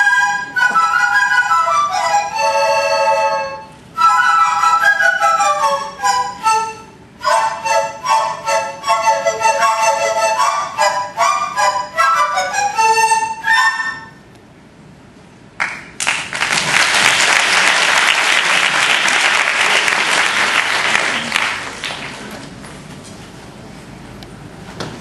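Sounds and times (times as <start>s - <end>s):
bamboo flutes playing: 0.0s - 14.3s
audience applauding: 15.6s - 22.6s.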